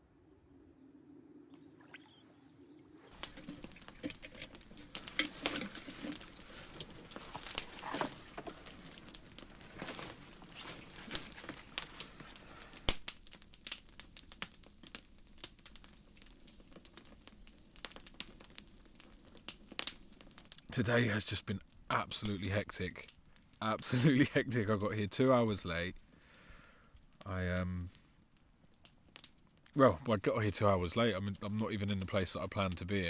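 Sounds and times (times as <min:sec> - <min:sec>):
rustling and crinkling: 0:03.0 - 0:20.7.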